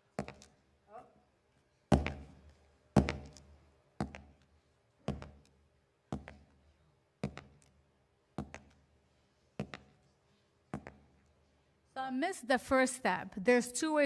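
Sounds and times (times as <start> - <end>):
footsteps on cement floor: 1.9 - 4.4, 5.0 - 5.5, 6.1 - 6.5, 8.4 - 8.8, 9.5 - 11.2.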